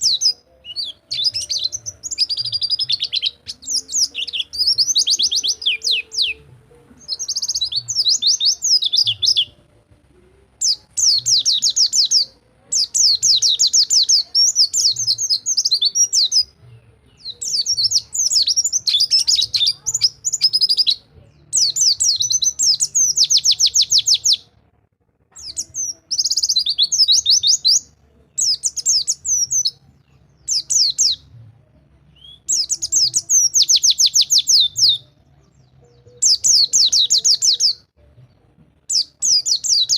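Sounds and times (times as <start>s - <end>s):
bird singing rapid trills: 0.0s - 9.6s, 10.6s - 16.5s, 17.2s - 24.4s, 25.4s - 29.8s, 32.2s - 35.1s, 38.9s - 39.9s.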